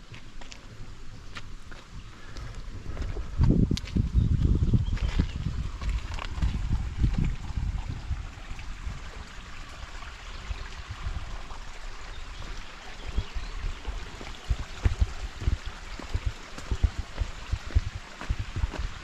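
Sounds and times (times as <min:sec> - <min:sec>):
running water: 0:05.2 - 0:19.0
low knocks and thumps: 0:12.4 - 0:19.0.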